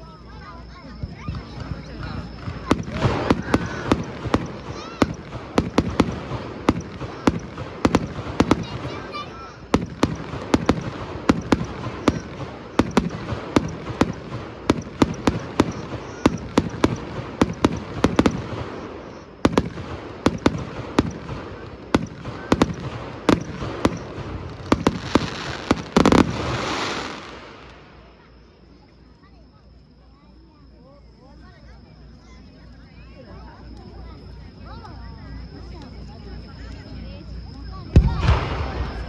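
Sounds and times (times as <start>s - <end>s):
fireworks crackling: 0.0s - 28.7s, 37.4s - 39.0s.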